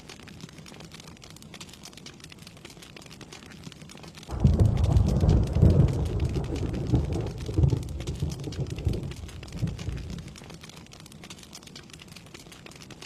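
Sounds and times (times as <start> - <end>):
steady rain falling: 0.0 - 13.0
rolling thunder: 4.3 - 10.5.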